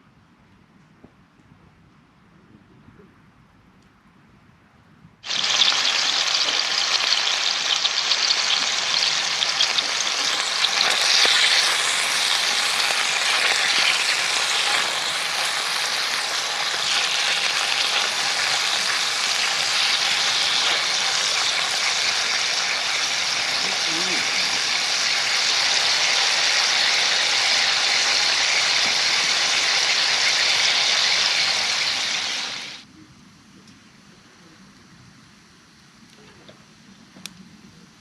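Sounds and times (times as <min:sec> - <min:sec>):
food sizzling in a skillet: 0:05.2 - 0:32.8.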